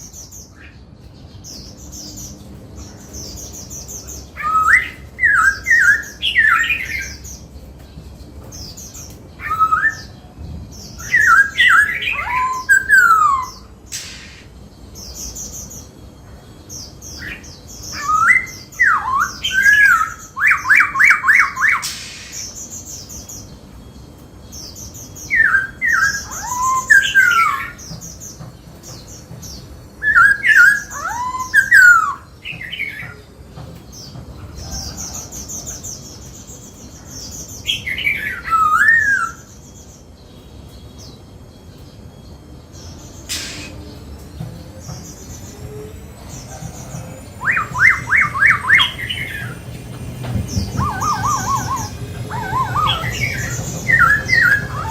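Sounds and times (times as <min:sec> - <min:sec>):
bird singing whistled notes: 0:03.0 - 0:07.6, 0:08.8 - 0:16.0, 0:16.8 - 0:33.2, 0:34.6 - 0:54.9
thin high chattering notes: 0:43.3 - 0:54.9.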